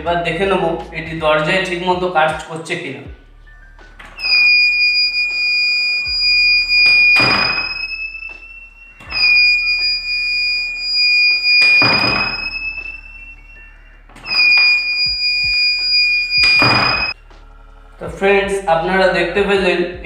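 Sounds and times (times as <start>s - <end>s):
piezo buzzer high-pitched tone: 4.2s - 17.2s
door swinging rush: 9.0s - 13.4s.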